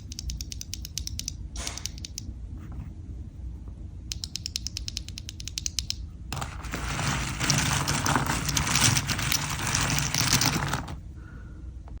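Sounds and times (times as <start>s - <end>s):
evenly spaced keystrokes: 0.0s - 2.2s, 4.1s - 6.0s
mechanical keyboard typing: 7.0s - 11.0s.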